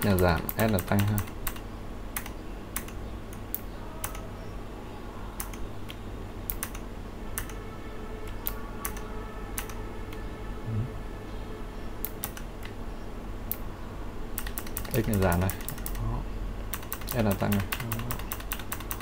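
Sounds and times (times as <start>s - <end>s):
keyboard keys clicking: 0.0s - 1.6s, 14.4s - 16.0s, 16.7s - 19.0s.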